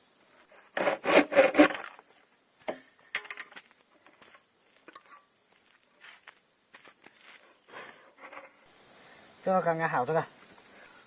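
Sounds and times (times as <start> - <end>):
crickets chirping: 0.0 - 11.0
saw rasping through bamboo: 0.8 - 1.9.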